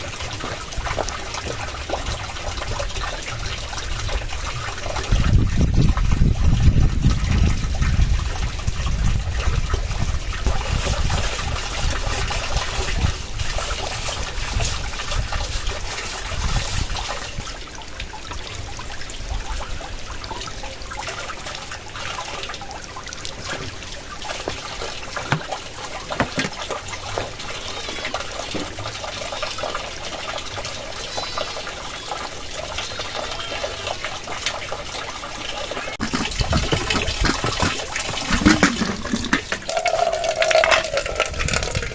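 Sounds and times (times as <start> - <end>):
wind rumbling on microphone: 2.0 - 17.5
dripping ticks: 36.0 - 41.9.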